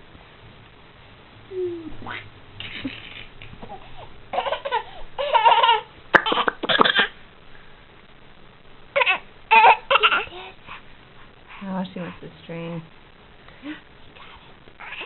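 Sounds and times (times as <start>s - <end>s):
baby laughing and squealing: 3.0s - 7.1s, 9.0s - 10.4s.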